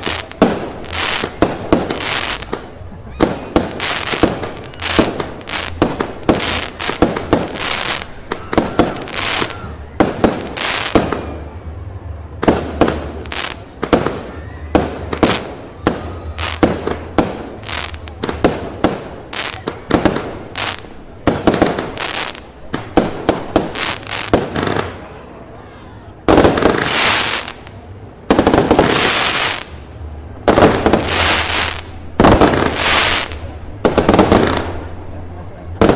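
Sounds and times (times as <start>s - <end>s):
firecracker bangs: 0.0s - 11.4s, 28.3s - 29.8s, 30.4s - 34.9s.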